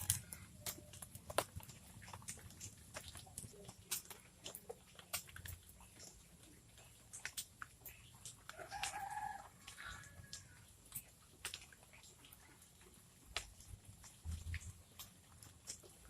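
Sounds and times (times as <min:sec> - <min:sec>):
faint clicks and ticks: 0:00.0 - 0:16.0.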